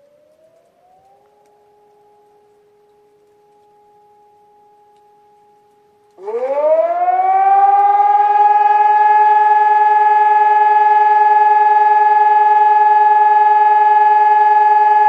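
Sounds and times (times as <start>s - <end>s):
civil defence siren steady tone: 0.0s - 15.0s.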